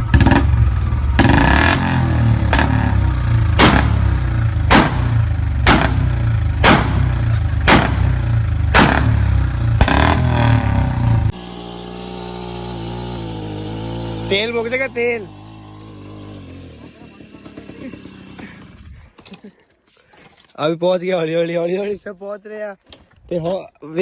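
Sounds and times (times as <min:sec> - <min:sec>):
motorcycle exhaust running: 0:00.0 - 0:18.8.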